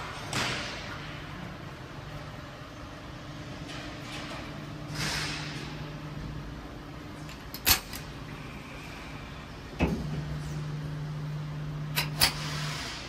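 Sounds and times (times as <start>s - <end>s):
tumble dryer motor hum: 9.7s - 12.2s.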